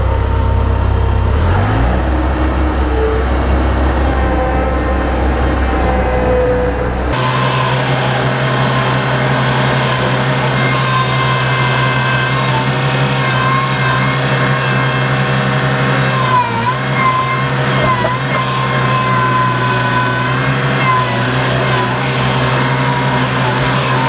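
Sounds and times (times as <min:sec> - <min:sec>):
skid steer engine running: 0:07.1 - 0:24.0.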